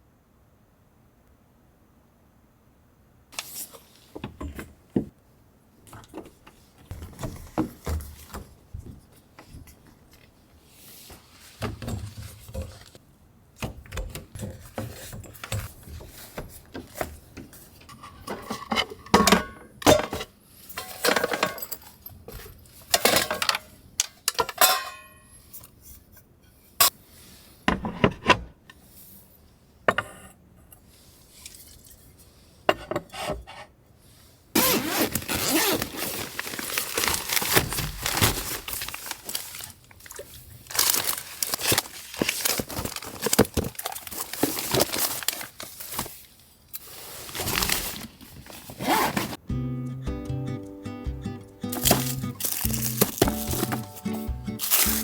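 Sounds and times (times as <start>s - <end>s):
small objects clinking and rattling: 51.7s - 55.0s.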